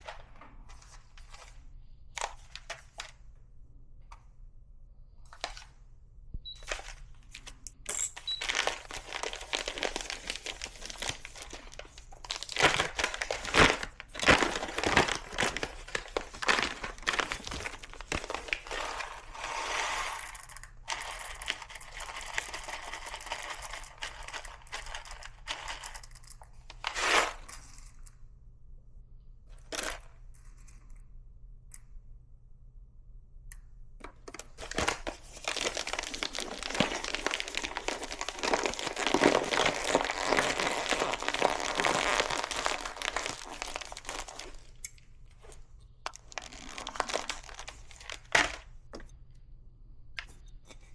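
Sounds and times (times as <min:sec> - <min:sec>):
hand coffee grinder crunching: 0:08.4 - 0:26.1, 0:34.6 - 0:45.0, 0:46.1 - 0:48.6.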